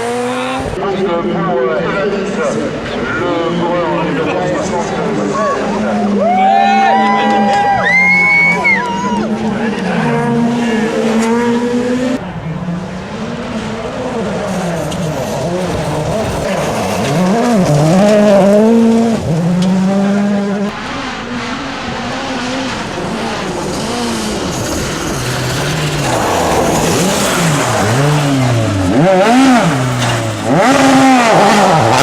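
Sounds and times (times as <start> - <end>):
rally car engines revving: 0.0 - 32.0.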